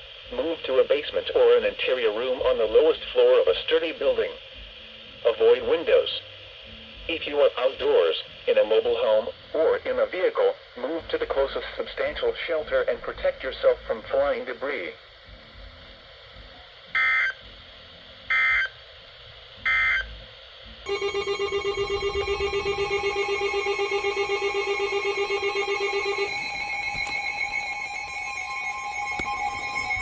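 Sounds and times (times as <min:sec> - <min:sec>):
digital data tones: 0:20.9 - 0:30.0
fast-pulsing electronic alarm tone: 0:20.9 - 0:30.0.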